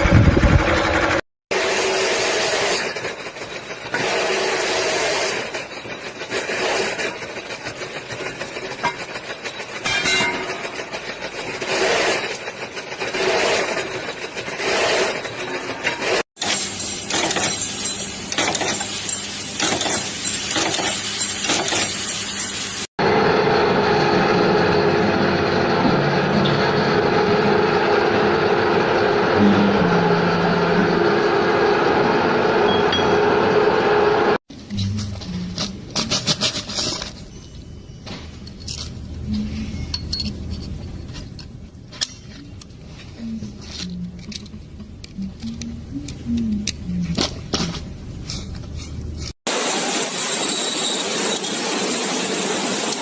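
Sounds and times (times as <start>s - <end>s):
clattering machine: 0.0s - 33.9s.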